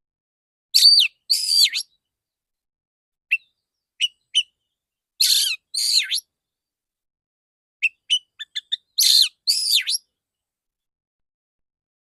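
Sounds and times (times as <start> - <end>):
short sharp bird chirps: 5.2 - 6.3, 7.8 - 10.1
songbird singing: 7.8 - 10.0.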